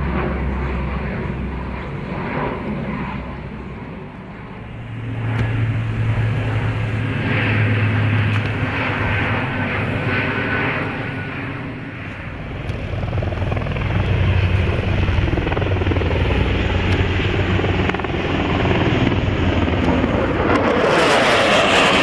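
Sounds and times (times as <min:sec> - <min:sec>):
aircraft engine drone: 0:00.0 - 0:22.0
loud rushing noise: 0:04.5 - 0:16.2.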